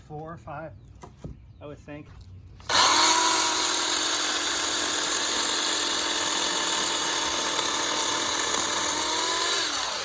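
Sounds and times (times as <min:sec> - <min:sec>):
electric chainsaw cutting branch: 0:02.6 - 0:10.0.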